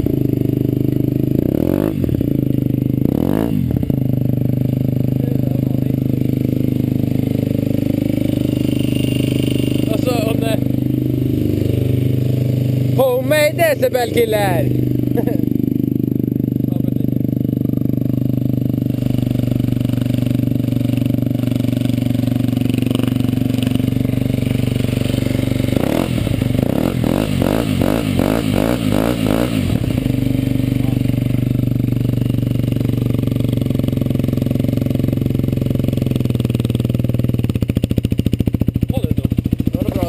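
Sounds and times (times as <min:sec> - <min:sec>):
motorcycle engine idling and revving: 0:00.0 - 0:40.0.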